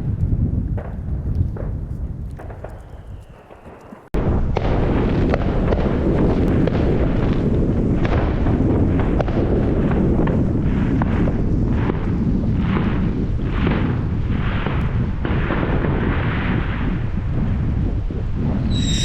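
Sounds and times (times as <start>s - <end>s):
firework rumbling roar: 0.0s - 19.0s
firework crackles: 0.2s - 19.0s
firework hissing: 18.7s - 19.0s.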